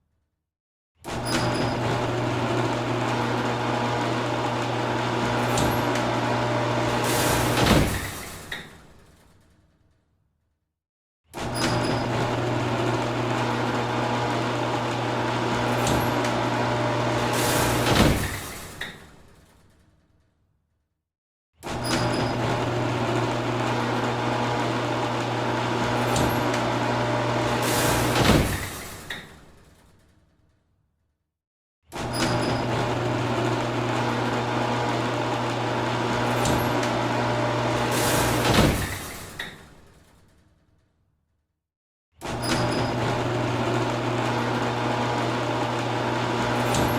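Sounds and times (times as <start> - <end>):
garage door motor hum: 1.1 - 8.7, 11.4 - 19.6, 21.6 - 29.6, 32.0 - 40.0, 42.2 - 46.9
garage door clunk: 1.2 - 9.3, 11.4 - 19.5, 21.7 - 29.9, 32.0 - 40.0, 42.2 - 46.9.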